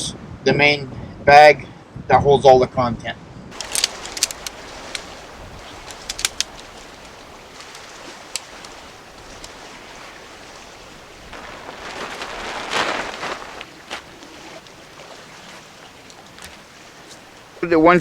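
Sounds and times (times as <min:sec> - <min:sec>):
low steady hiss: 0:03.5 - 0:18.0
rustling of tent gear: 0:03.5 - 0:18.0
sharp clicks: 0:03.6 - 0:09.6.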